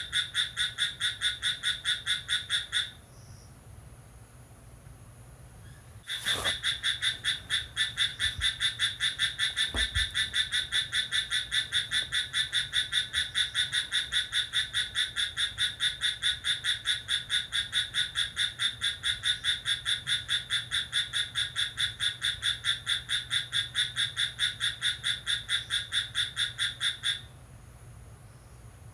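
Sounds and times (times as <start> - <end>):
cricket chirping: 0.0 - 3.6.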